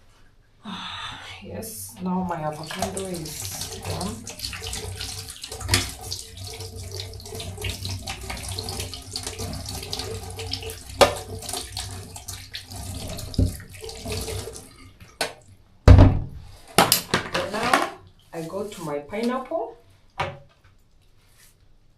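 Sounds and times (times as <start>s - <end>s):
tap water running into sink: 1.9s - 15.5s.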